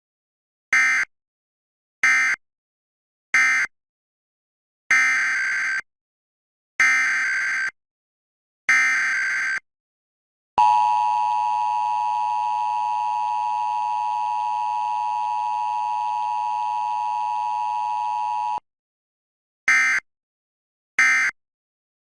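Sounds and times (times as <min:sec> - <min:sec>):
two-tone attention signal: 0:10.6 - 0:18.6.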